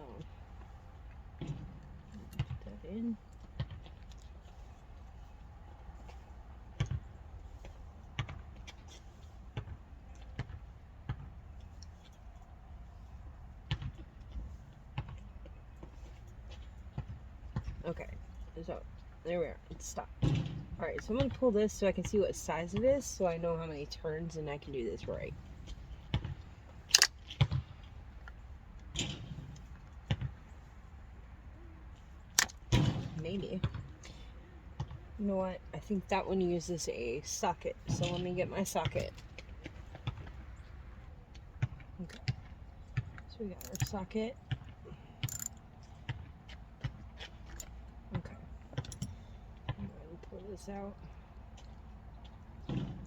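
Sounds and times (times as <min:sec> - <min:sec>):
tool clicking on metal parts: 0:26.9 - 0:27.2, 0:32.4 - 0:32.6, 0:43.6 - 0:44.0, 0:45.2 - 0:45.6.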